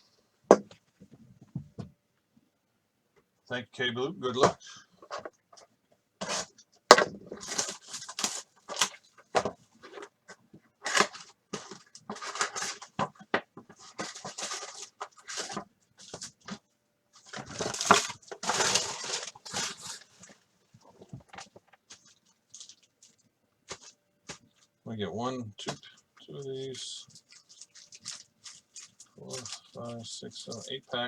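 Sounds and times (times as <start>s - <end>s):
cardboard and foil packs crinkling: 6.2s - 10.1s, 10.8s - 24.7s, 25.7s - 31.0s.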